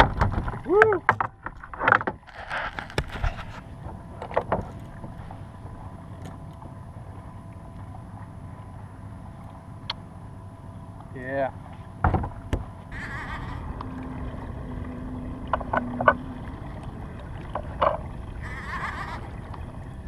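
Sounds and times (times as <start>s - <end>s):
wind: 0.0s - 20.0s
knocks on kayak: 12.0s - 12.7s
water wash: 13.0s - 20.0s.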